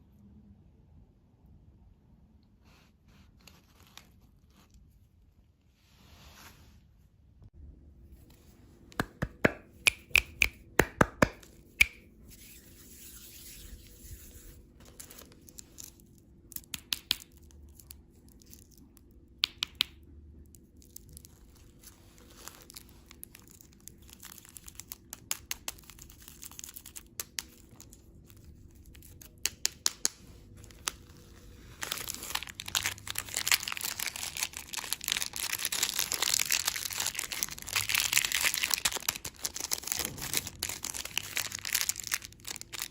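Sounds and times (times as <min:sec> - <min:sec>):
sharp clicks and taps: 0:08.9 - 0:12.0
plastic wrapper crinkling and tearing: 0:13.5 - 0:19.2, 0:20.5 - 0:42.9.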